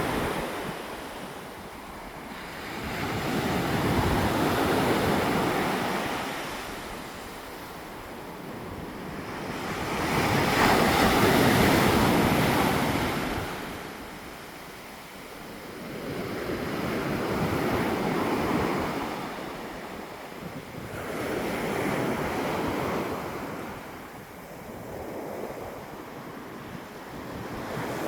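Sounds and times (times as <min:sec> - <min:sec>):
ocean waves breaking: 0:00.0 - 0:28.0.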